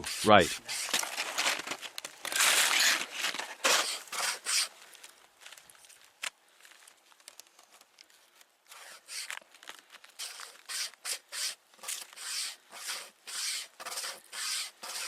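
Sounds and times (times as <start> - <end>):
string saw rasping through wood: 0.0 - 1.1, 2.3 - 4.7, 8.7 - 9.4, 10.2 - 15.0.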